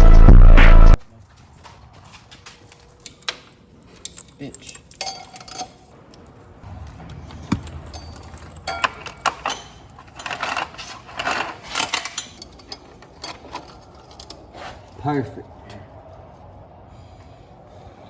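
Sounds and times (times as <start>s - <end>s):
metal chain clinking and rattling: 1.2s - 6.0s, 7.4s - 15.2s.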